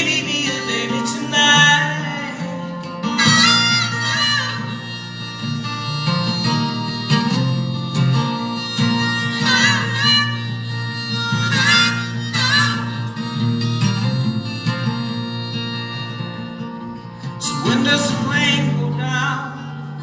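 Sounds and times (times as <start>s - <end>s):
harmonica solo: 0.0s - 20.0s
strummed acoustic guitar: 0.0s - 20.0s.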